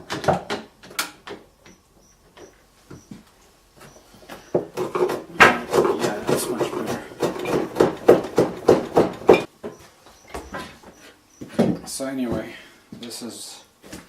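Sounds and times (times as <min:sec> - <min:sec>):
hand tool strokes on wood: 0:03.8 - 0:09.5.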